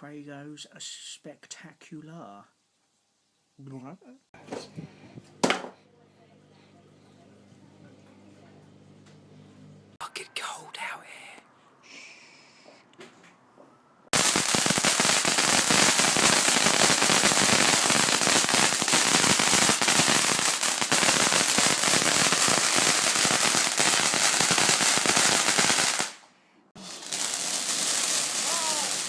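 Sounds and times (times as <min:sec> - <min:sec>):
firework fountain hissing and crackling: 0:14.1 - 0:26.2, 0:26.8 - 0:29.0.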